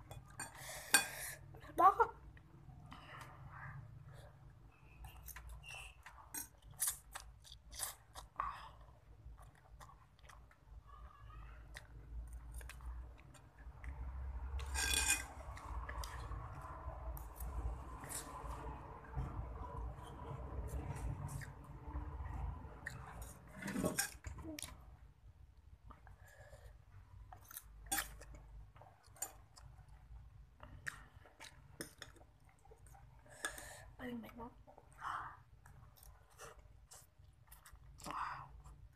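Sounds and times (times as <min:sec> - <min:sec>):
person chewing noodles: 0:04.9 - 0:10.9, 0:11.6 - 0:18.7, 0:25.8 - 0:33.9, 0:34.8 - 0:38.9.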